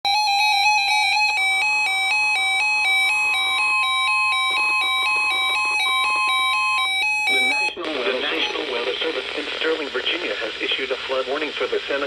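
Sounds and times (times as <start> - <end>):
steady high tone: 0.2 - 8.6.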